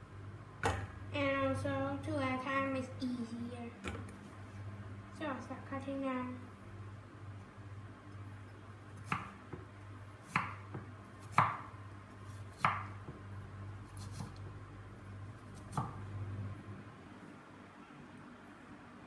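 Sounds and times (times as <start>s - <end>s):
knife chopping fruit: 9.0s - 13.2s, 13.9s - 14.5s, 15.3s - 16.0s.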